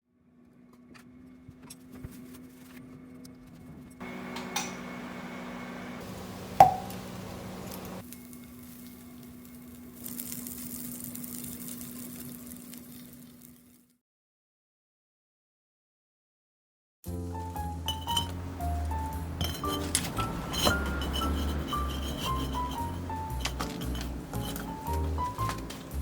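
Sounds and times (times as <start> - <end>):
soft sizzling hiss: 6.0 - 13.8
dishes and utensils clinking: 17.8 - 26.0
food being handled: 17.8 - 26.0.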